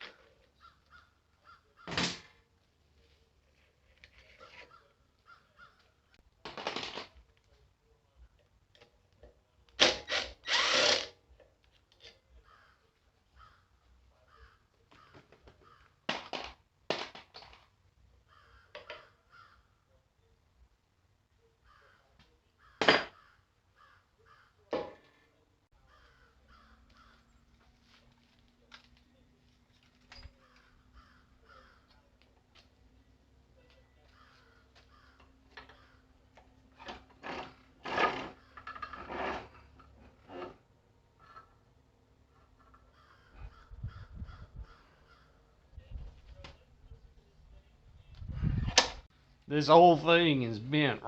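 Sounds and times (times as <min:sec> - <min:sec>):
crows cawing: 0:00.1 - 0:02.0, 0:04.6 - 0:06.1, 0:12.4 - 0:16.1, 0:18.2 - 0:19.9, 0:21.6 - 0:24.7, 0:25.8 - 0:27.5, 0:30.3 - 0:32.3, 0:33.9 - 0:36.4, 0:42.4 - 0:45.6.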